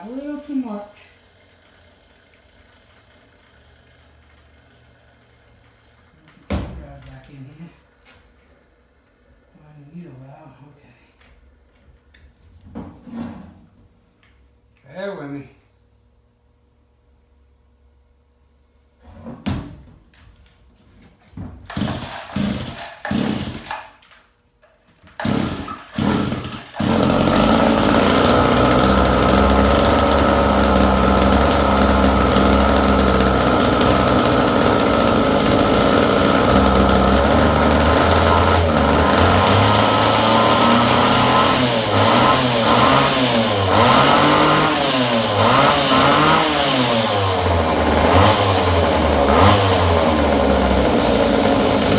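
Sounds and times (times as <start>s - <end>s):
chainsaw engine sputtering and running: 21.7s - 23.9s, 25.1s - 51.9s.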